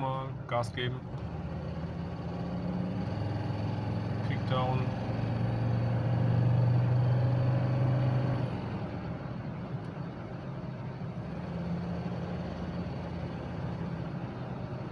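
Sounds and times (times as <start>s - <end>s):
diesel engine at full throttle: 0.0s - 14.9s.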